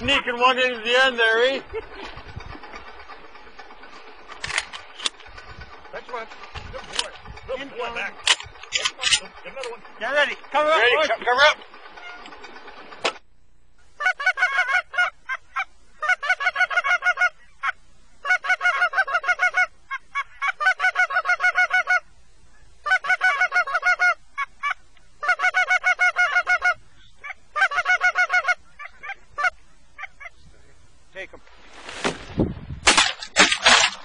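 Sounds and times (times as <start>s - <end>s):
goose call honks and clucks: 8.2s - 12.4s, 14.0s - 30.5s.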